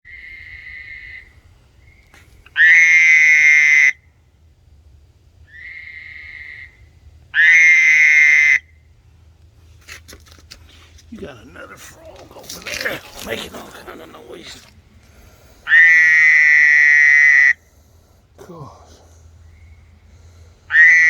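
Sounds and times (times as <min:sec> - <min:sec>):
loud frog call close by: 0:00.1 - 0:04.1, 0:05.4 - 0:08.8, 0:15.6 - 0:17.7, 0:20.7 - 0:21.0
faint frog call: 0:00.1 - 0:04.2, 0:05.4 - 0:08.9, 0:11.9 - 0:21.0.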